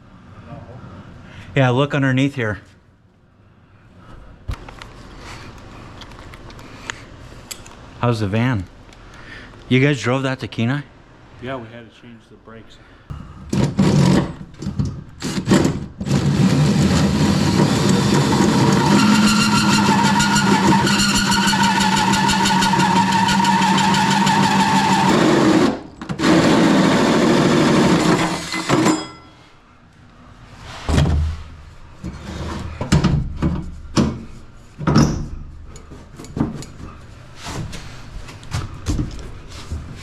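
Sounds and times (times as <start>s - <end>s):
knocks and clatter: 32.8s - 37.0s.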